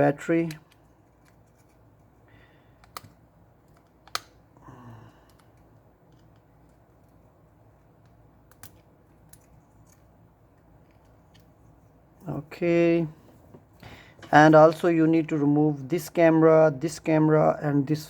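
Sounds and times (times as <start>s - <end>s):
small tool clicking on phone parts: 2.8s - 4.4s, 8.0s - 10.1s.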